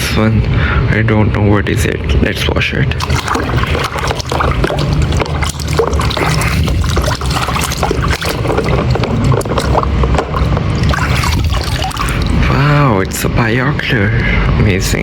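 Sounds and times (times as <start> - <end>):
water splashing in a bucket: 2.9 - 13.2.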